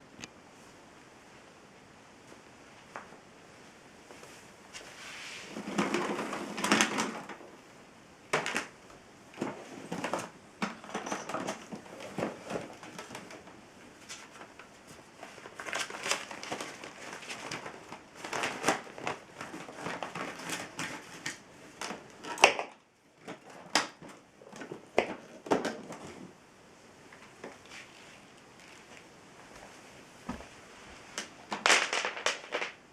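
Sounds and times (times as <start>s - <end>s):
vacuum cleaner parts handling: 4.8s - 7.5s, 9.4s - 26.3s.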